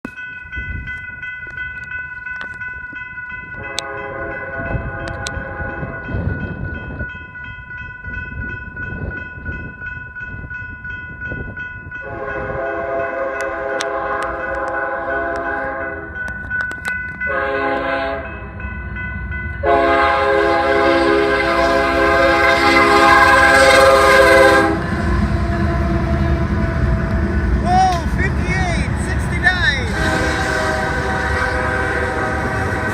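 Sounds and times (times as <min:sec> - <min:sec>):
crossing bell ringing: 0:00.0 - 0:32.9
train rumbling: 0:00.1 - 0:32.9
locomotive air horn blasts: 0:03.6 - 0:06.0, 0:12.0 - 0:16.1, 0:17.3 - 0:18.4, 0:19.6 - 0:27.3, 0:29.8 - 0:32.9.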